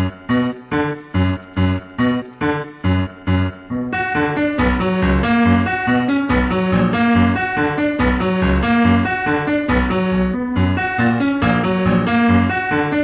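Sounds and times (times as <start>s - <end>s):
piano-led music with beat: 4.0s - 13.0s.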